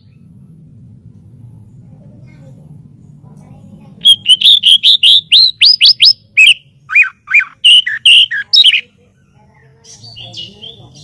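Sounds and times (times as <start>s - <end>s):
bird singing whistled notes: 4.0s - 8.9s.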